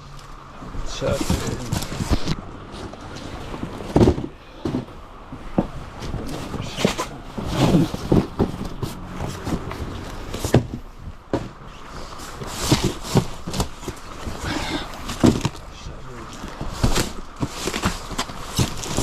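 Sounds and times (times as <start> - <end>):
cardboard scraping rustles: 0.7 - 19.0
cardboard cases knocking: 3.0 - 11.7.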